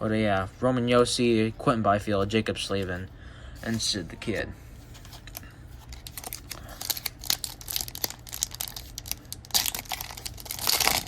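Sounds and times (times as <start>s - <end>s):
wrapper crinkling and tearing: 5.9s - 11.0s.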